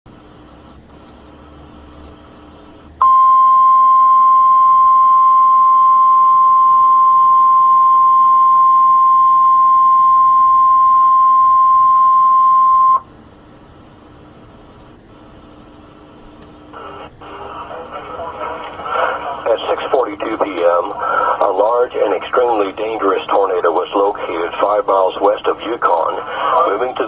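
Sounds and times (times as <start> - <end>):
loud steady alarm tone: 3.0 - 13.0.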